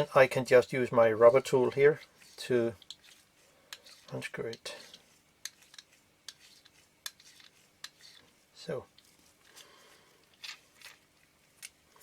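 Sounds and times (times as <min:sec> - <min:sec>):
metal lens parts clicking: 0:05.4 - 0:08.2.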